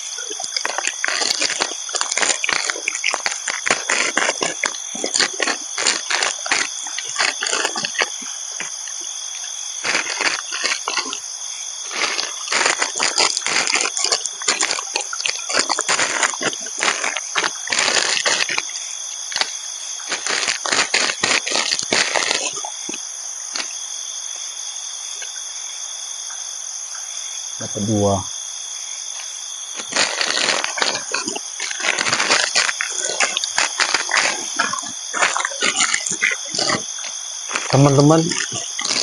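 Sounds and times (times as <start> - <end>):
close crackling and rustling: 0.0 - 23.8, 29.2 - 39.0
insects shrilling: 0.0 - 25.8, 27.2 - 39.0.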